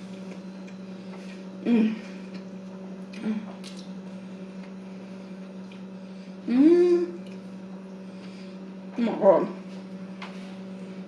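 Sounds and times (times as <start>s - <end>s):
low electrical hum: 0.0s - 11.0s
person humming mm: 1.6s - 2.2s, 3.1s - 3.6s, 6.4s - 7.2s
chewing and mouth sounds: 2.2s - 4.0s, 5.4s - 5.9s, 7.2s - 7.5s.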